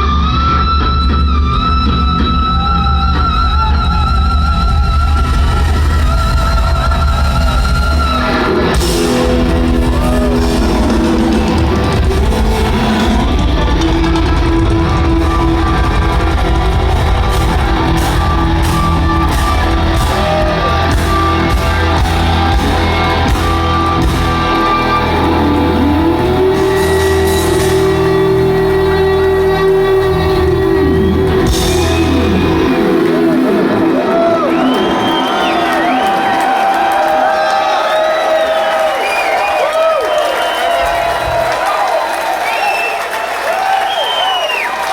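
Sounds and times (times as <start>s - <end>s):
electric guitar sustained lead notes: 0.0s - 36.6s
bass and drums: 0.0s - 36.7s.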